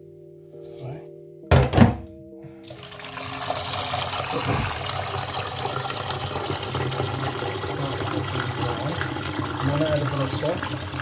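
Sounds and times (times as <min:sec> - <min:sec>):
tap water pouring into pot: 0:02.6 - 0:11.0.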